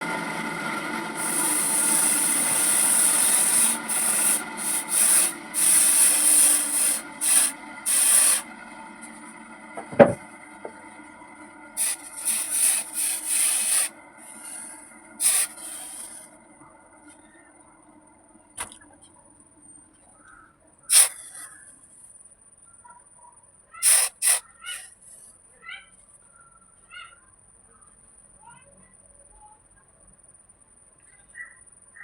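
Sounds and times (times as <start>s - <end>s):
steady low hum: 0.0s - 26.8s
abrasive sanding strokes: 1.2s - 9.2s, 11.8s - 16.3s.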